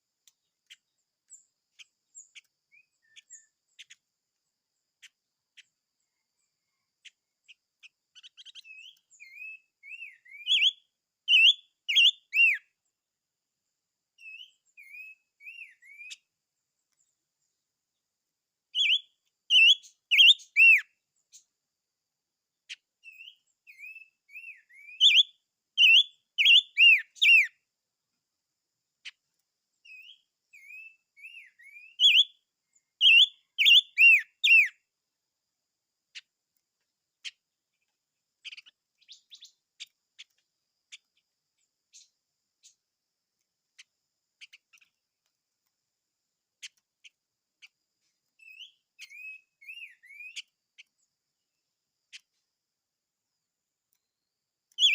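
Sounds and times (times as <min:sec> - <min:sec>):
songbird whistling phrases: 0:08.2 - 0:12.6, 0:14.2 - 0:16.2, 0:18.7 - 0:20.9, 0:23.0 - 0:27.6, 0:29.8 - 0:32.4, 0:33.0 - 0:34.8, 0:48.4 - 0:50.5.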